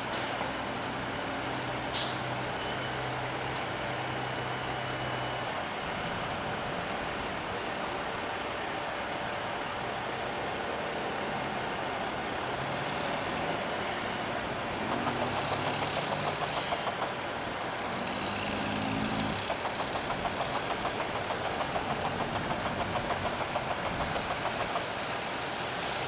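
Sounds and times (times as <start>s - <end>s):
traffic and road noise: 0.0s - 26.0s
vehicle engine pulsing: 12.0s - 26.0s.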